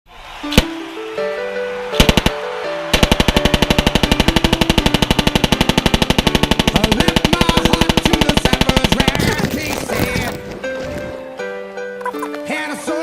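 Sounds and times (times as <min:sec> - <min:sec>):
background music: 0:00.1 - 0:13.0
single gunshots: 0:02.0 - 0:10.2
automatic gunfire: 0:02.0 - 0:10.3.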